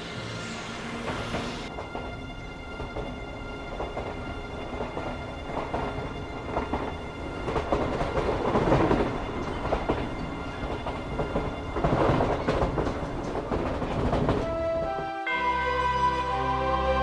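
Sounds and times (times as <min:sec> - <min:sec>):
soft sustained music: 0:00.0 - 0:13.4, 0:14.4 - 0:17.0.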